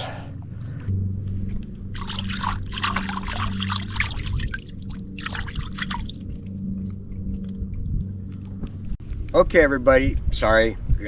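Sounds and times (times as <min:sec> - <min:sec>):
steady low hum: 0:00.0 - 0:09.3
water splashing and dribbling: 0:01.9 - 0:07.0.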